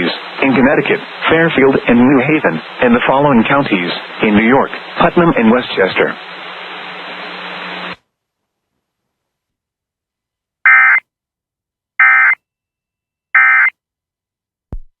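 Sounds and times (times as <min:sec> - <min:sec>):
broadcast hiss with low hum: 0:00.0 - 0:09.5.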